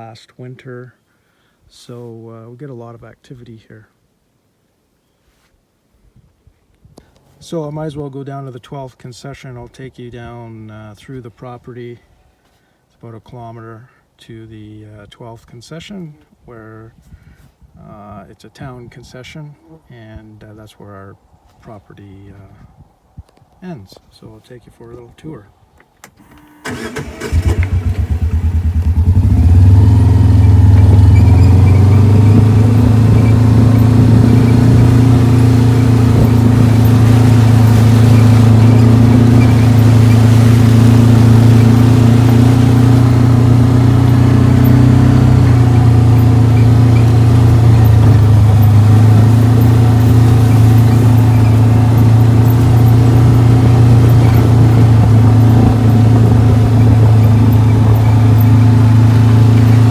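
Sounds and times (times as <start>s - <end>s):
vehicle engine starting and running: 26.0s - 59.9s.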